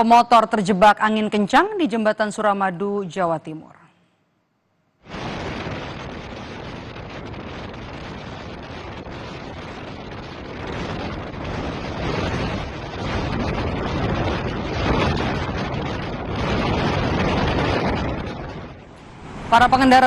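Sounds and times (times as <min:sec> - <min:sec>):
strong wind blowing on microphone: 0:05.1 - 0:20.0.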